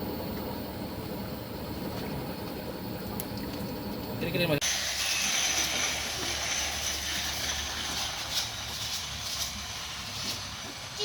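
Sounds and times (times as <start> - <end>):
even hiss: 4.4 - 11.0.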